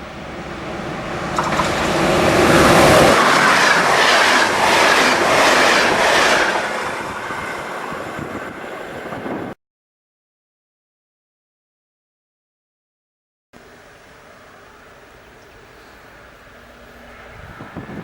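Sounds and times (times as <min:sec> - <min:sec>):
train wheels clattering over rail joints: 0:01.2 - 0:06.4.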